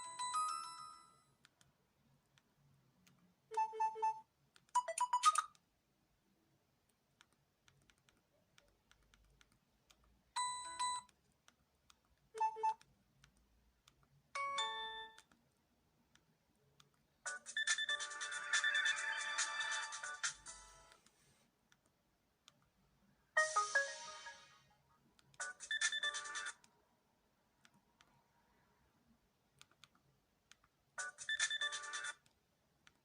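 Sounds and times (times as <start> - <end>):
electronic ringtone melody: 3.6 - 4.2, 17.3 - 20.9, 23.4 - 24.7.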